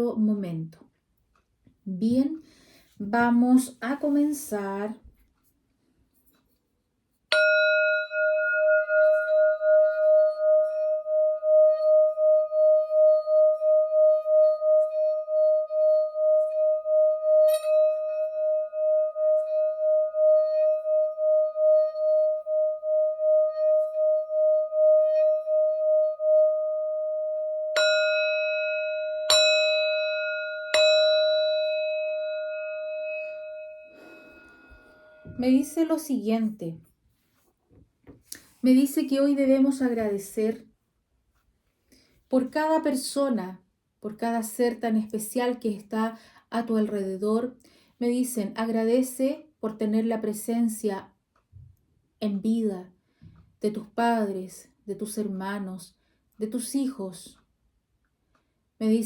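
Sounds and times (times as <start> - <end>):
singing bowl ringing: 7.3 - 35.9.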